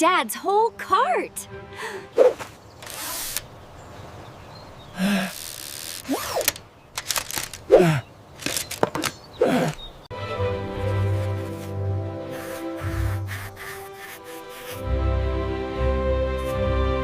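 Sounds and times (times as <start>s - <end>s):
background music: 0.0s - 2.5s, 10.1s - 17.0s.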